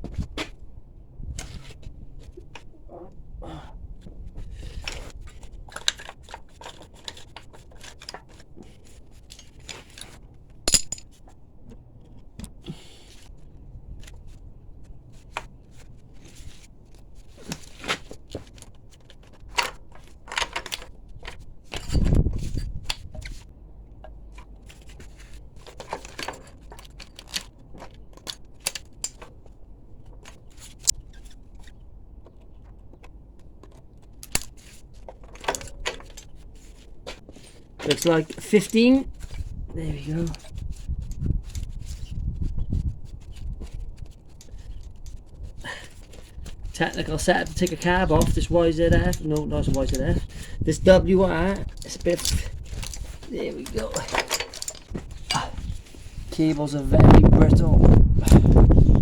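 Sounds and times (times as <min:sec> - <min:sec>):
metal tools clinking and scraping: 0:04.6 - 0:11.2, 0:33.0 - 0:42.2, 0:43.2 - 0:57.3.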